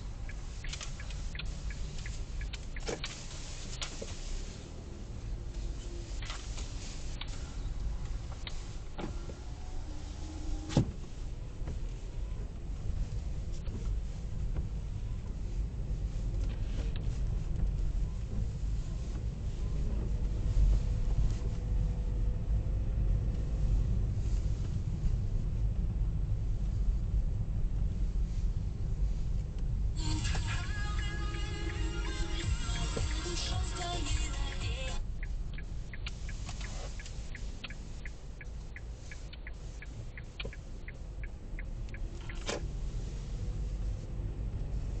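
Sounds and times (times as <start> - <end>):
car engine rumbling: 0.0 - 45.0
car indicator clicking: 0.2 - 3.2, 31.0 - 42.7.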